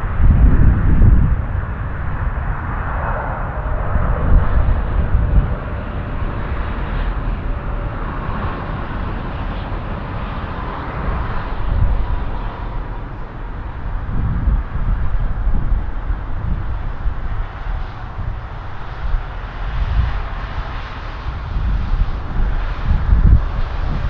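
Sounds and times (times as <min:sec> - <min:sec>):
jet engine rumble with whine: 0:00.0 - 0:24.0.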